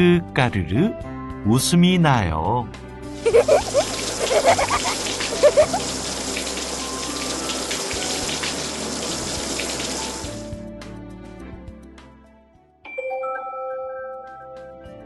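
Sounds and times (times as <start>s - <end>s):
water splashing: 3.2s - 10.2s
young child giggling: 3.3s - 5.8s.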